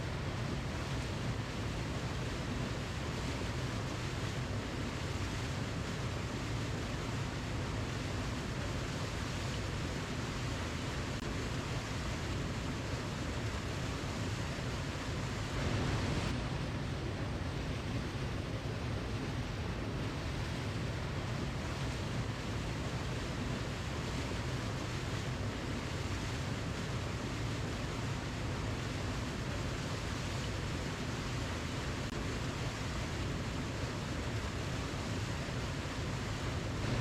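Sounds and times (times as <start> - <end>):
waterfall rushing: 15.1 - 16.6, 33.2 - 37.0.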